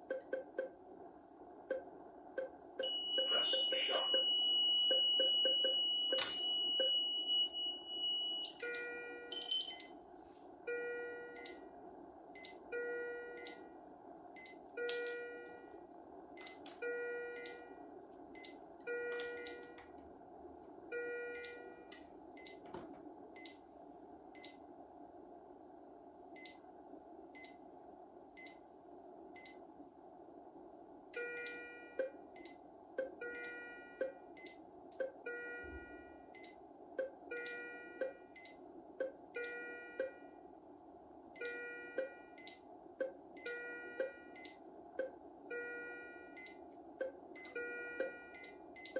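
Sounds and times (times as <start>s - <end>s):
steady high tone: 0.0s - 8.4s
multi-tone alarm chime: 0.0s - 9.7s.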